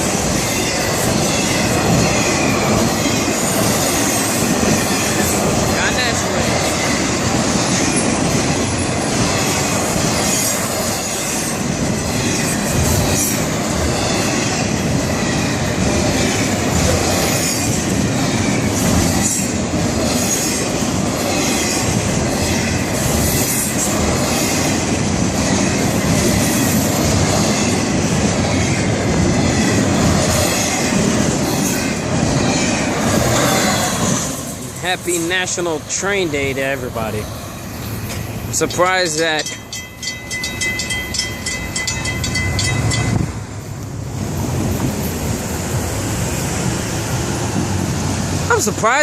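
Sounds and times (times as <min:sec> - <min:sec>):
steel wheels rumbling on rail: 0:00.0 - 0:49.0
clicking over rail joints: 0:37.9 - 0:44.0.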